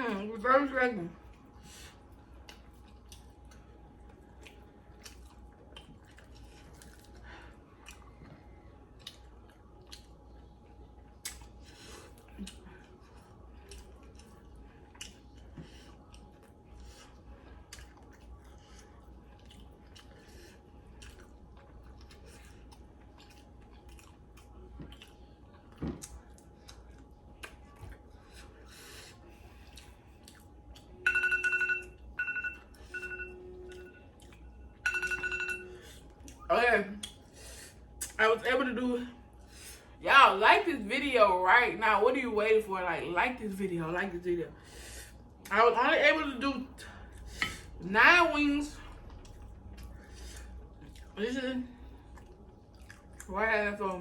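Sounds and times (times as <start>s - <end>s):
person chewing food: 1.2s - 31.0s, 31.8s - 38.2s, 46.9s - 47.8s, 48.8s - 51.2s, 51.8s - 53.3s.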